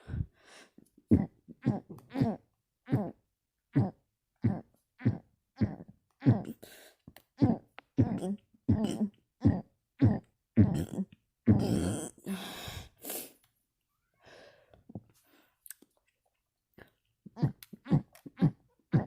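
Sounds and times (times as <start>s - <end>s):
person burping: 7.4s - 12.3s.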